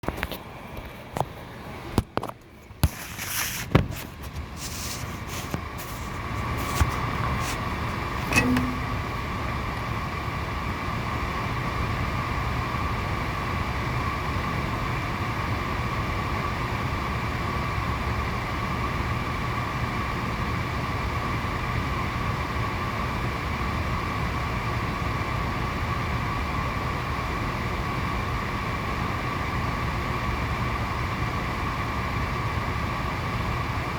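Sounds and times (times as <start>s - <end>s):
heater blower fan whine: 0.1s - 33.9s
short knock: 8.2s - 9.1s.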